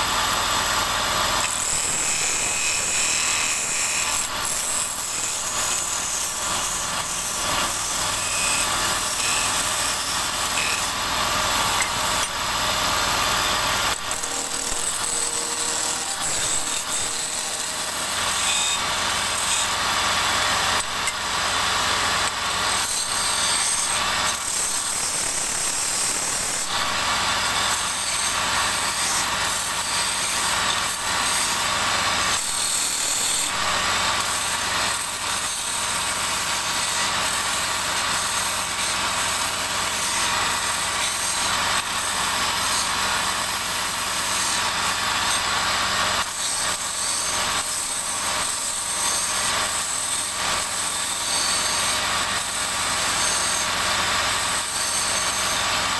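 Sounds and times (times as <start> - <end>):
wood lathe motor hum: 0.0 - 55.9.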